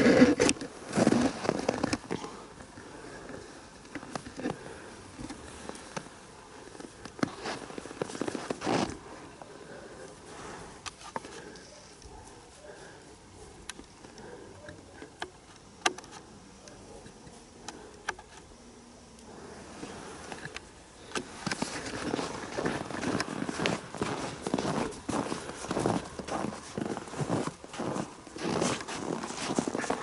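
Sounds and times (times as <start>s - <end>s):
soft rustling: 0.0s - 14.5s, 19.3s - 30.0s
footsteps: 21.1s - 30.0s.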